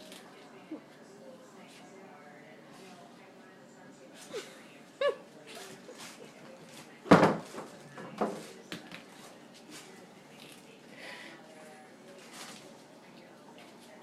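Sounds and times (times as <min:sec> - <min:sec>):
groceries knocking and rustling: 0:05.5 - 0:10.6.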